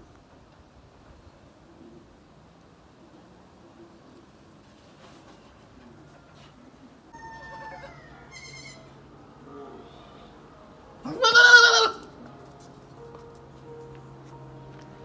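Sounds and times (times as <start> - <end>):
goat bleating: 11.0 - 12.1.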